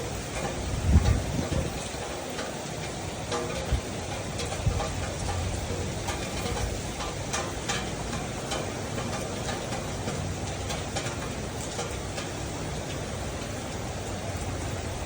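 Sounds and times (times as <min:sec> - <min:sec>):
raindrop ticks: 0:00.0 - 0:15.0
steady rain: 0:00.0 - 0:15.0.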